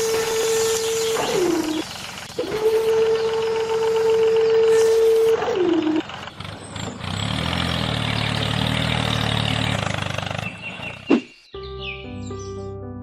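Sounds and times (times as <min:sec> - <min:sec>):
vehicle horn tone: 0:00.0 - 0:01.6, 0:02.4 - 0:06.0
truck engine running: 0:00.0 - 0:11.4.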